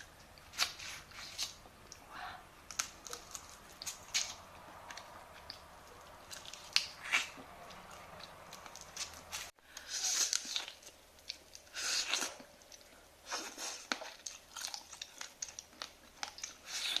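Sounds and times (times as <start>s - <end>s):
shell being cracked and chewed: 2.7s - 9.4s.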